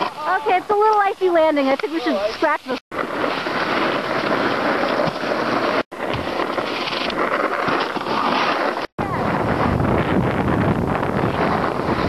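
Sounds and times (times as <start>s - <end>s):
wind noise on microphone: 3.0s - 12.0s.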